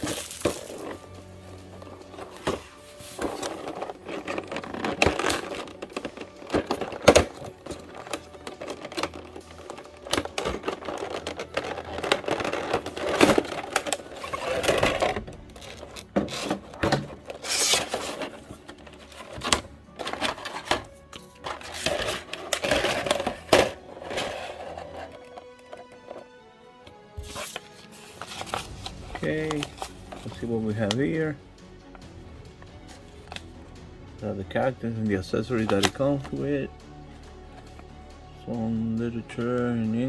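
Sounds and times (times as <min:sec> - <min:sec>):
cardboard box handling: 0:00.0 - 0:26.2, 0:27.2 - 0:31.1, 0:35.5 - 0:36.4
plastic packaging rustling: 0:00.0 - 0:26.2, 0:27.2 - 0:31.4, 0:35.5 - 0:36.5.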